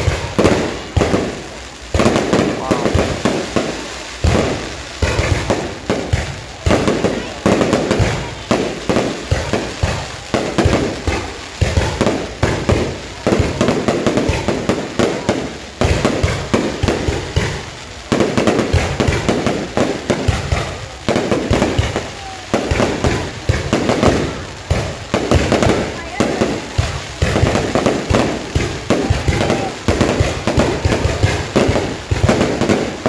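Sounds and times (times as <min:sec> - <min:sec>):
rapid crackling and popping bangs: 0:00.0 - 0:33.0.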